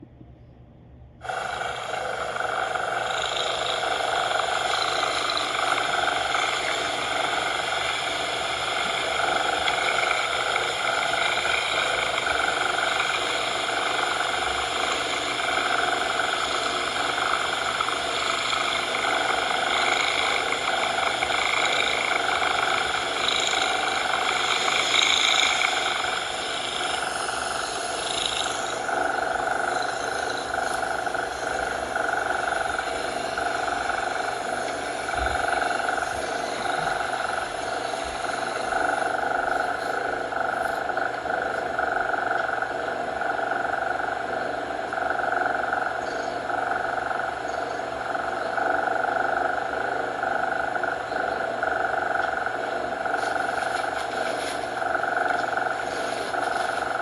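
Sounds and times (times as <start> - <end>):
faint low rumble: 0.0 - 11.5
continuous even hiss: 1.2 - 57.0.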